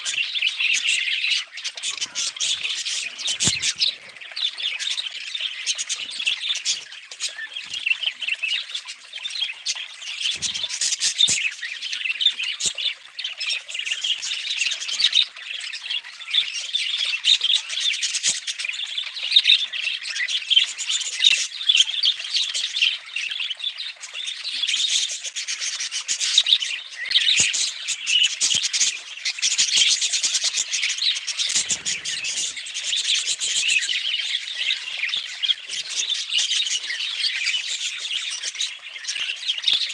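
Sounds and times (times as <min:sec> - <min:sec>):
budgerigar chirping and squawking: 0:00.0 - 0:11.5, 0:24.8 - 0:39.9.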